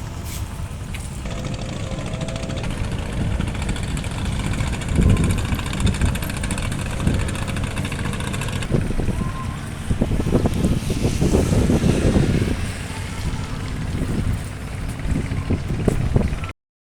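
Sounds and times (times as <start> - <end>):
wind buffeting microphone: 0.0 - 16.5
boat engine throbbing: 0.7 - 16.5.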